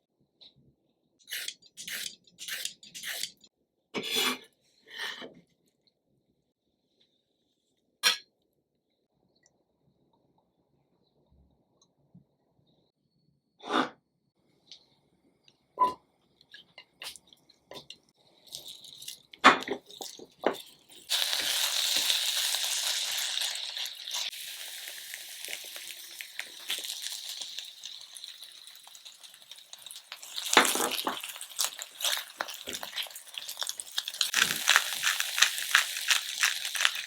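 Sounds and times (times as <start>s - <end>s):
food sizzling in oiled pan: 19.9s - 37.0s.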